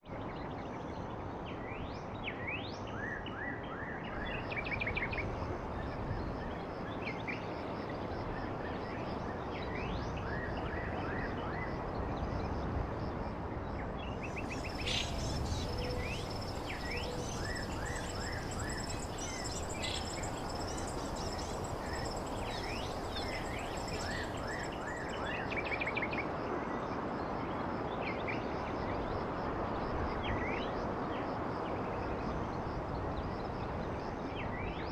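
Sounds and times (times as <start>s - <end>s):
steady background noise: 0.1s - 34.9s
birds chirping: 14.3s - 25.2s
insect buzzing: 14.4s - 24.7s.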